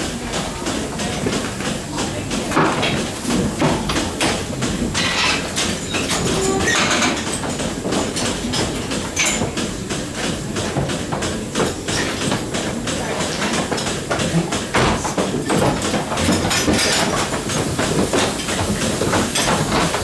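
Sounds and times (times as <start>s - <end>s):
milking machinery running: 0.0s - 20.0s
metal clanks and knocks: 2.5s - 9.7s, 13.3s - 20.0s.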